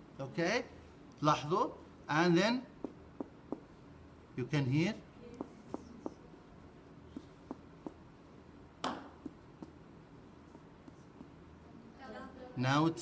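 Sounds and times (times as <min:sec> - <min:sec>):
finger tapping on abdomen: 0:02.8 - 0:03.7, 0:05.4 - 0:06.2, 0:07.1 - 0:08.0, 0:10.5 - 0:11.4.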